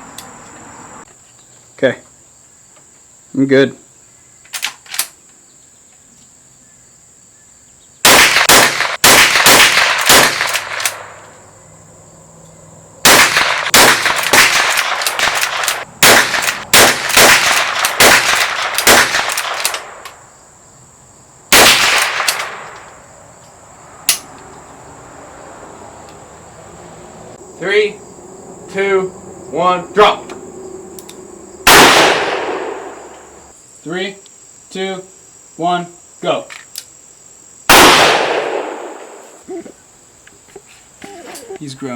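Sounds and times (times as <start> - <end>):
crickets buzzing: 0.0 - 41.9
rapid gunshots: 8.1 - 11.1, 13.1 - 20.0, 31.7 - 33.0.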